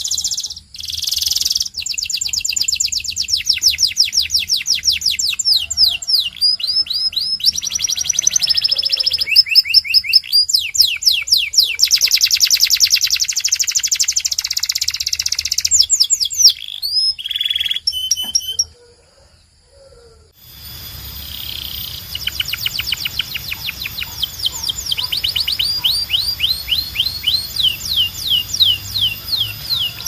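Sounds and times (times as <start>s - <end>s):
canary singing: 0.0s - 18.9s, 20.4s - 30.0s.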